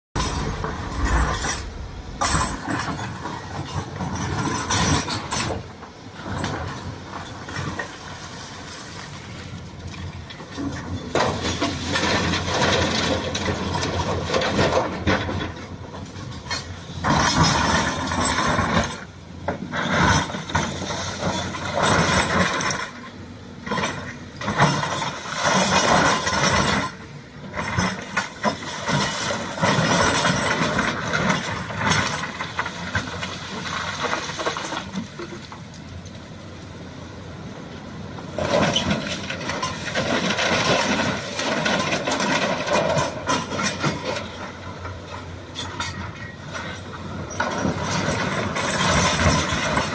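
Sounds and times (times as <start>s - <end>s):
metal parts clanking: 0.2s - 5.4s
excavator diesel engine running: 0.2s - 49.9s.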